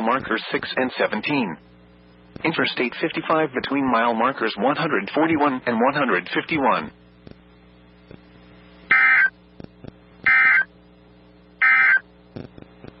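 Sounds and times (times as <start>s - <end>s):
digital data tone bursts: 8.9s - 9.3s, 10.2s - 10.7s, 11.6s - 12.0s.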